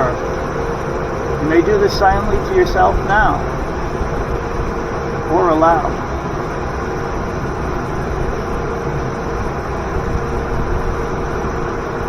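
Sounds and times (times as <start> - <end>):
waterfall roaring: 0.0 - 7.8
faint steady tone: 0.0 - 12.0.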